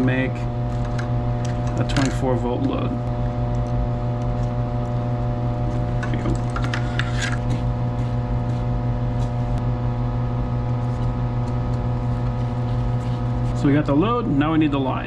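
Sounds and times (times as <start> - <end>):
machinery hum with low drone: 0.0 - 15.0
clicking and rattling parts: 0.8 - 2.9.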